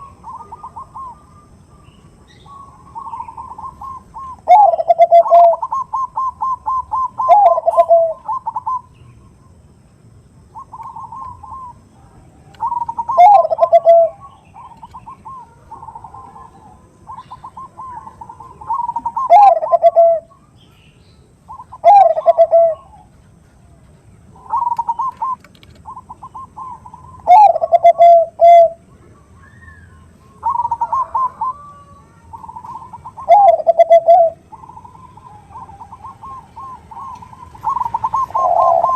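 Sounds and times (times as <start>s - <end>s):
dove cooing with staccato notes: 0.0s - 9.0s, 10.5s - 11.9s, 12.5s - 20.5s, 21.5s - 29.3s, 30.4s - 38.9s.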